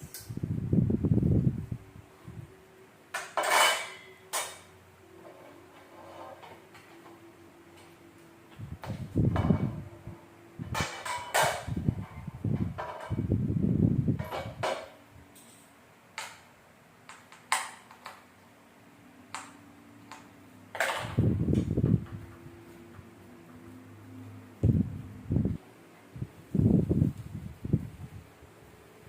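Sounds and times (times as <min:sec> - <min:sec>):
faint steady hum: 0:00.0 - 0:29.0
rustling and clattering: 0:03.2 - 0:07.2, 0:08.6 - 0:13.3, 0:20.7 - 0:23.7.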